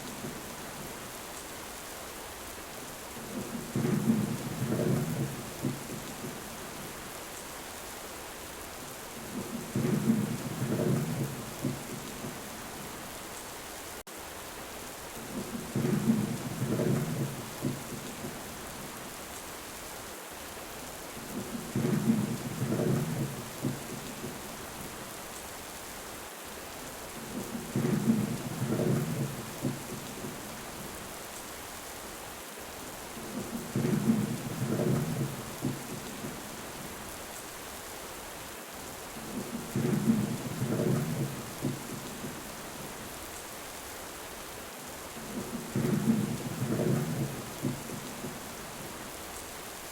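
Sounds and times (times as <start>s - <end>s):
steady rain: 0.0s - 49.9s
rolling thunder: 39.3s - 42.4s, 45.3s - 48.4s.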